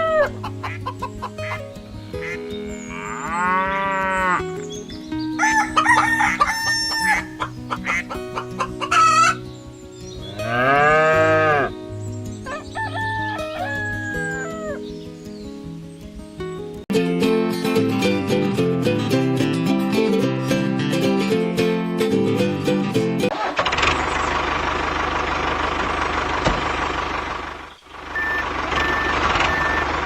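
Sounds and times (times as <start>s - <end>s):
hens clucking: 0.0s - 4.4s, 5.4s - 9.4s
background music: 0.0s - 23.3s
rooster crowing: 5.4s - 7.5s, 12.4s - 14.8s.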